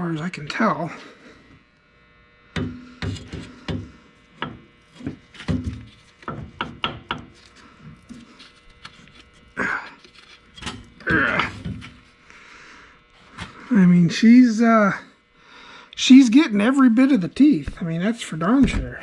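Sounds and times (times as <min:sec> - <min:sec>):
tools knocking and rubbing: 0:02.6 - 0:07.4.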